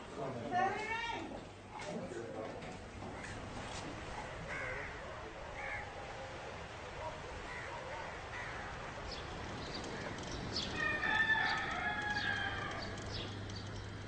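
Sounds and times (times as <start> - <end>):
rooster crowing: 10.6 - 13.2.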